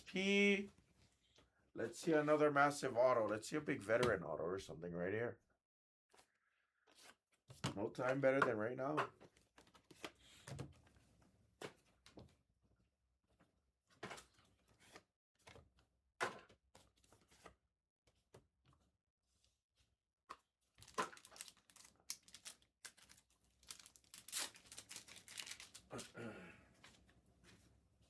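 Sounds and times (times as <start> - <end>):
plastic wrapping tearing: 20.8 - 26.1.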